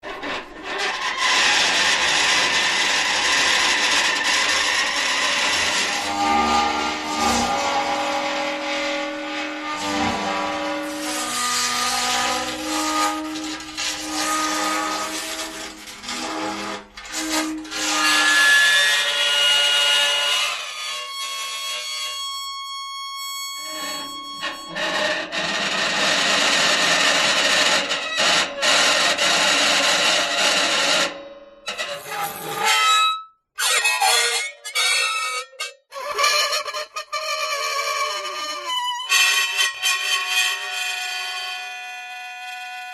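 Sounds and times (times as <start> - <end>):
metal squealing: 0.0 - 42.9
metal scraping: 0.1 - 18.8.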